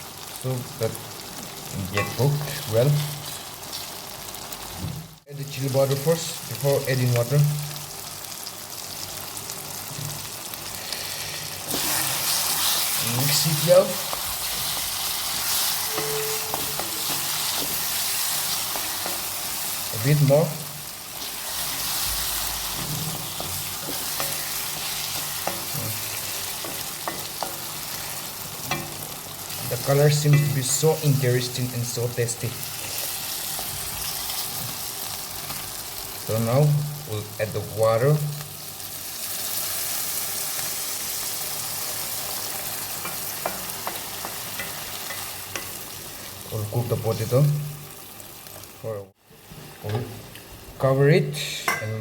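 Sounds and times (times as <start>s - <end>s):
potatoes sizzling in a pan: 0.0s - 50.7s
spatula scraping a pan: 11.7s - 19.8s, 21.2s - 29.0s.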